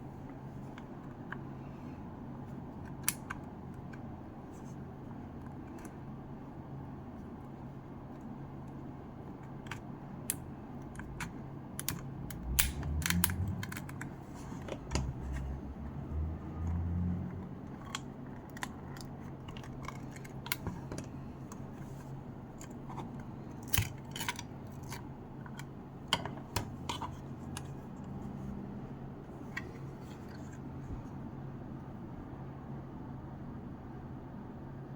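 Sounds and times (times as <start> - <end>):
steady low hum: 0.0 - 34.9.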